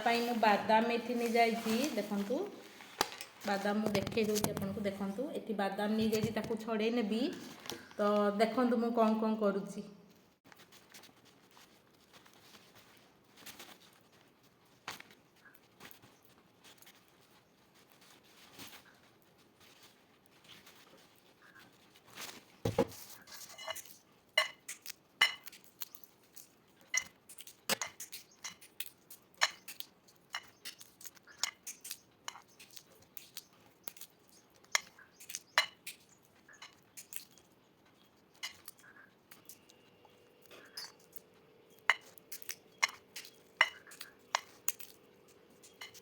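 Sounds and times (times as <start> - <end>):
peanuts being shelled: 23.0 - 46.0
pieces tapping on a dish: 41.8 - 45.0.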